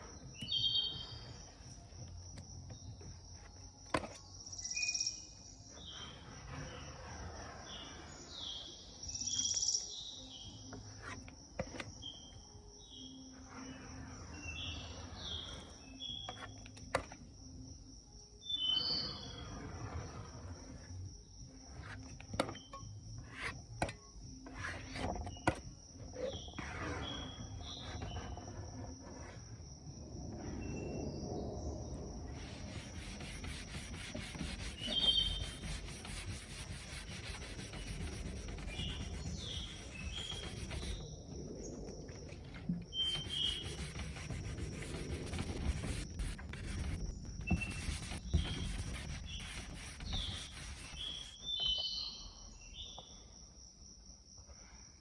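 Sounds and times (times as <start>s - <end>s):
rubbing on wood: 32.4s - 41.0s, 43.0s - 51.5s.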